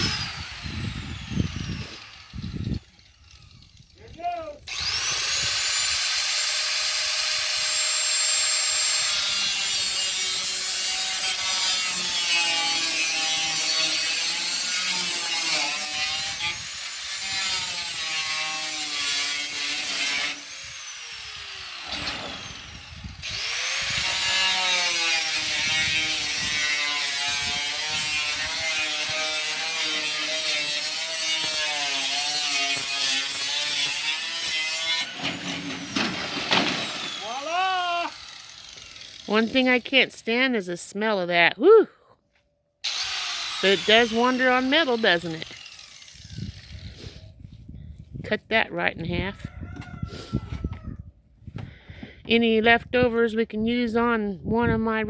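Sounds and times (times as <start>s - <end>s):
abrasive disc cutting sheet metal: 21.2s - 37.3s, 42.9s - 46.0s.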